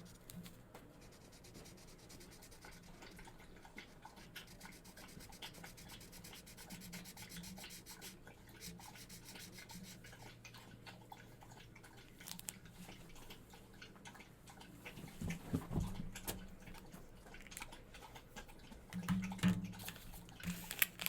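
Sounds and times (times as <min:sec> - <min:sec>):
marker scribbling on paper: 0:04.5 - 0:10.0.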